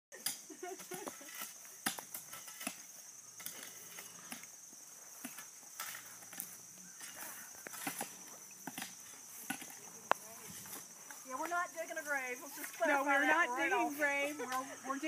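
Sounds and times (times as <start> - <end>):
insects droning: 0.1 - 15.0
knocks and scrapes of work: 0.8 - 10.9.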